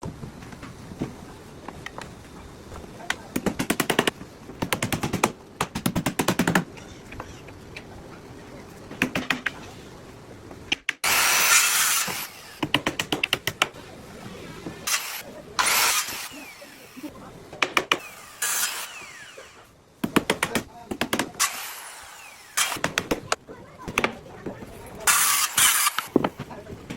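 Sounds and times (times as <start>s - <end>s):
power tool burst: 11.0s - 12.6s, 14.8s - 17.1s, 18.0s - 19.6s, 21.4s - 23.0s, 25.1s - 26.2s.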